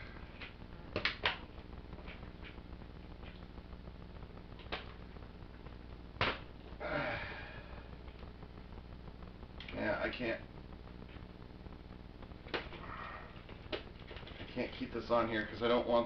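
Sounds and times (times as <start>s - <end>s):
noisy rustle: 0.0s - 16.0s.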